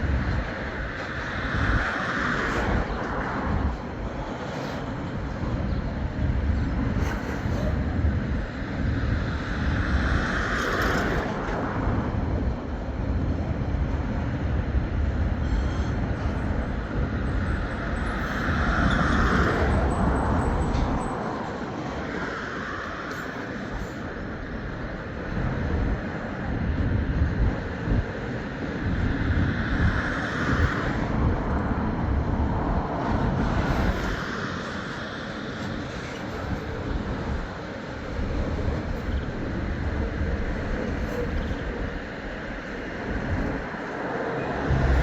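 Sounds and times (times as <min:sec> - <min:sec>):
freight train rumbling past: 0:00.0 - 0:45.0.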